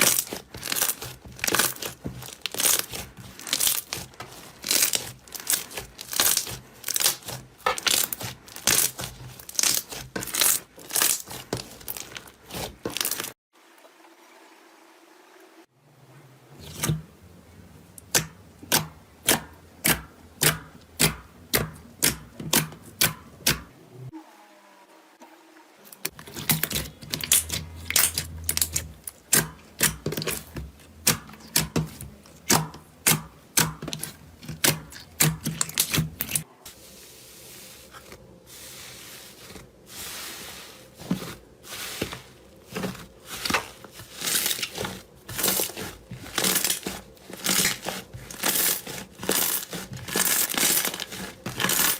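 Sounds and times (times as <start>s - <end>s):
slime crackling: 0.0s - 13.4s, 26.1s - 36.5s, 37.5s - 51.9s.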